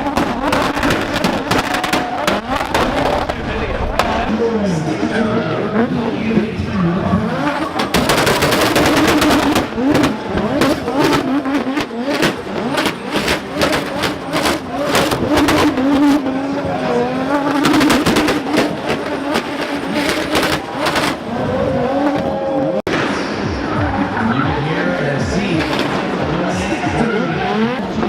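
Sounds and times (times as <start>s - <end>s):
sharp exhaust cracks: 0.0s - 4.6s, 7.4s - 22.2s
car engine revving hard: 0.0s - 28.0s.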